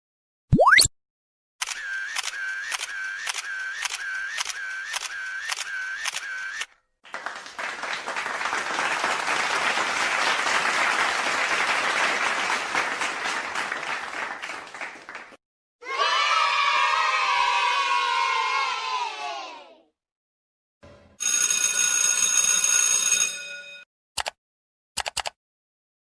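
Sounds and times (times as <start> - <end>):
camera shutter clicking: 1.6 - 6.7
applause: 7.0 - 15.4.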